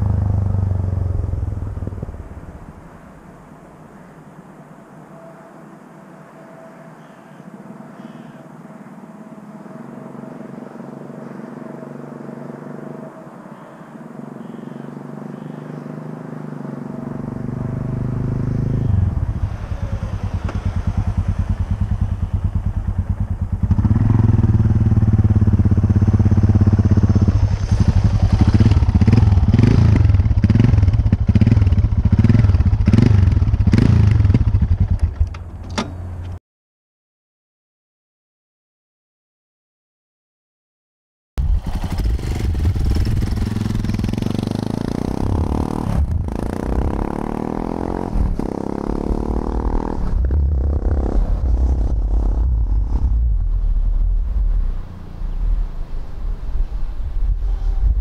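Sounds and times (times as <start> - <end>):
motorcycle engine running: 0.0 - 2.4, 16.8 - 36.3, 41.4 - 53.1.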